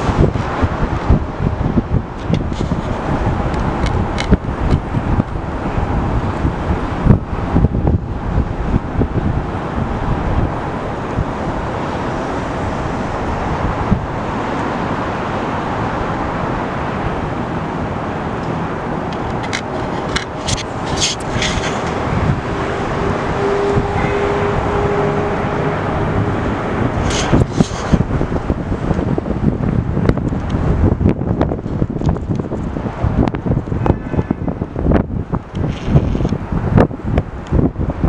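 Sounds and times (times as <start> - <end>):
wind buffeting microphone: 0.0 - 38.0
jet aircraft noise: 2.3 - 14.8, 15.7 - 29.2.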